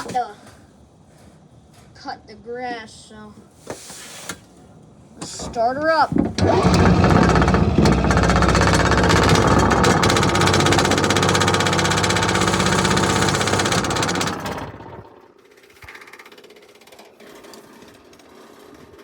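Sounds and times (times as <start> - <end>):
riding lawn mower engine running: 5.3 - 15.3.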